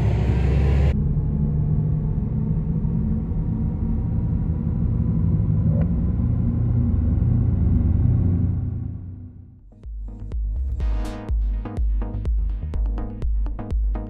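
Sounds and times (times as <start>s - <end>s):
electric car low rumble: 0.0s - 9.7s.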